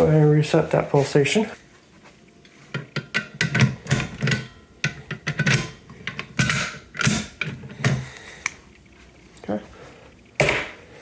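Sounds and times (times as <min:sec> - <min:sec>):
fire alarm pull station clicking: 0:02.8 - 0:07.6.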